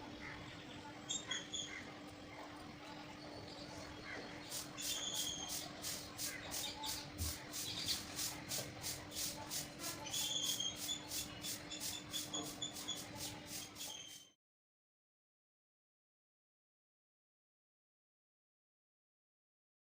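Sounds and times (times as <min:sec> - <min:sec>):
birds chirping: 0:00.0 - 0:14.3.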